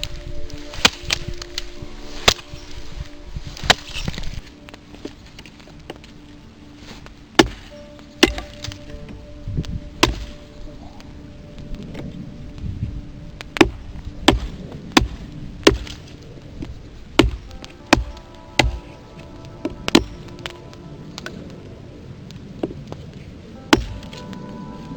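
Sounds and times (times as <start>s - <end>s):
faint background music: 0.0s - 24.9s
axe chopping wood: 2.2s - 2.7s, 7.4s - 9.0s, 10.0s - 10.4s, 13.6s - 16.1s, 17.2s - 19.0s, 19.9s - 20.5s, 23.7s - 24.2s.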